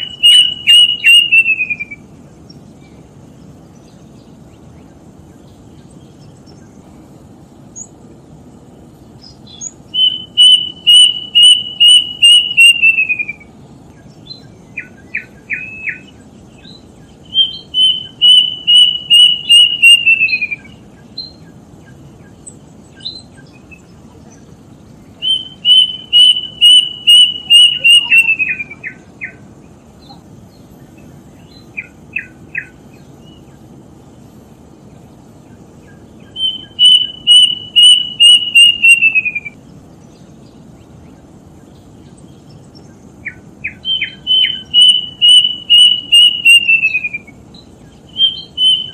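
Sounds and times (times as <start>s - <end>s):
bird whistling call: 0.0s - 2.1s, 9.2s - 13.5s, 14.2s - 24.4s, 25.2s - 29.4s, 31.4s - 33.6s, 35.8s - 39.6s, 43.2s - 48.9s.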